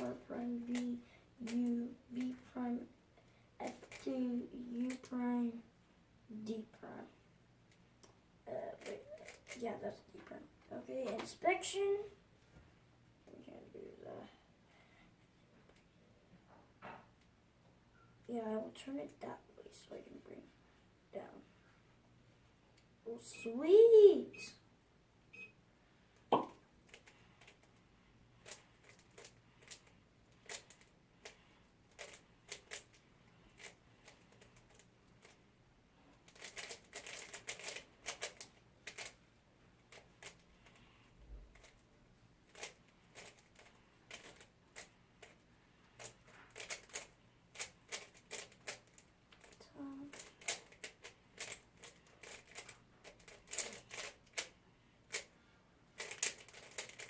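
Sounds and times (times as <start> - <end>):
puzzle cube clicking turns: 0.6 - 2.4, 3.6 - 5.1, 8.8 - 9.6, 26.3 - 27.8, 28.4 - 35.4, 36.2 - 39.2, 39.9 - 40.8, 41.5 - 41.8, 42.5 - 54.5, 56.0 - 57.0.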